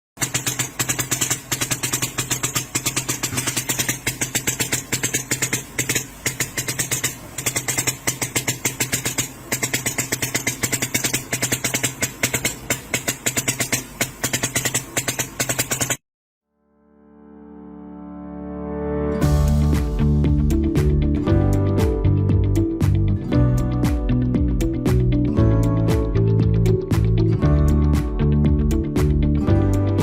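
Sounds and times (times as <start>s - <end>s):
machine clattering: 0.2s - 16.0s.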